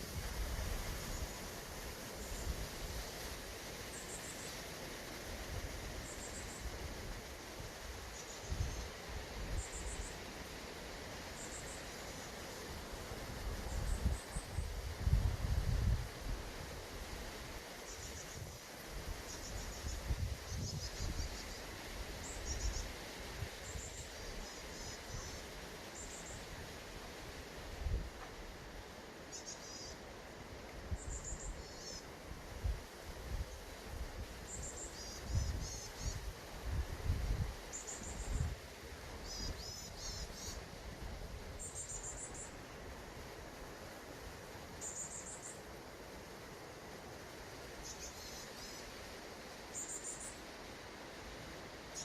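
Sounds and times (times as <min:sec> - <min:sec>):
wind rumble on microphone: 0:13.5 - 0:16.8, 0:18.3 - 0:21.4, 0:32.4 - 0:38.6.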